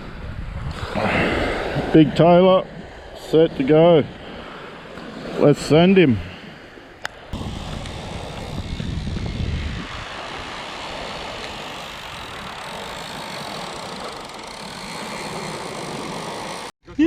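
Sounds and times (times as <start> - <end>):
wind rumble on microphone: 0.0 - 3.2, 7.3 - 12.7
drone motor whine: 7.4 - 16.7.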